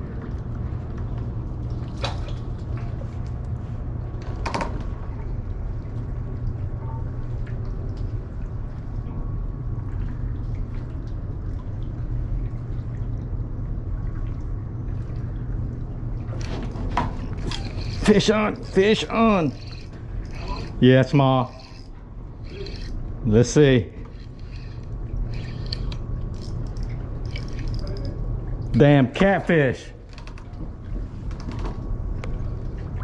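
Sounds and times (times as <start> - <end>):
steady low rumble: 0.0 - 33.0
water lapping against kayak hull: 10.0 - 23.2.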